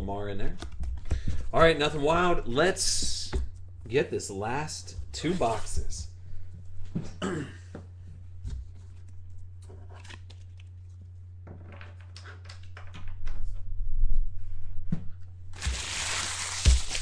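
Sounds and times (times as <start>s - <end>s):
steady electrical hum: 0.0s - 17.0s
person clearing throat: 7.1s - 7.8s
plastic wrap crackling and tearing: 15.6s - 17.0s.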